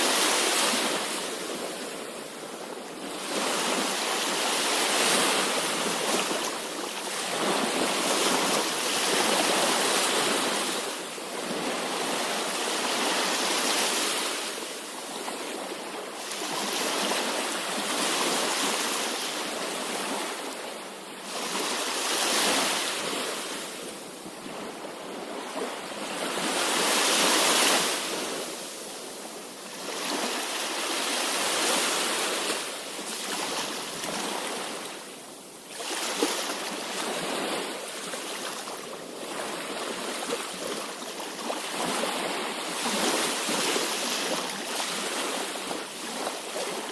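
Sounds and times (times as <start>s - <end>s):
sea waves breaking: 29.7s - 46.9s.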